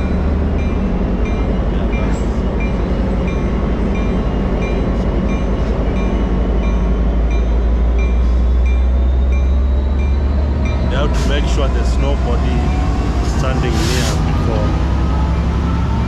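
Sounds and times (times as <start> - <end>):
train rumbling: 0.0 - 16.0.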